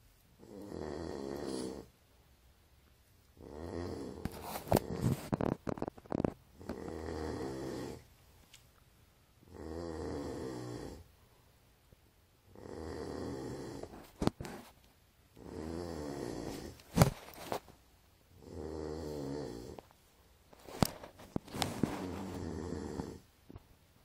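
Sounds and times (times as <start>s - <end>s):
dog snoring: 0.4s - 1.9s, 3.4s - 8.1s, 9.4s - 11.1s, 12.5s - 14.6s, 15.4s - 16.8s, 18.3s - 19.8s, 20.8s - 23.3s.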